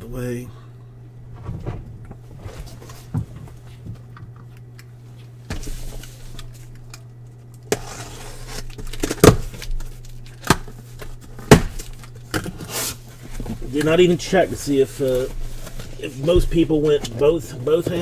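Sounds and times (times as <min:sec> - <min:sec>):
steady low hum: 0:00.0 - 0:18.0
packaging rustling: 0:05.5 - 0:18.0.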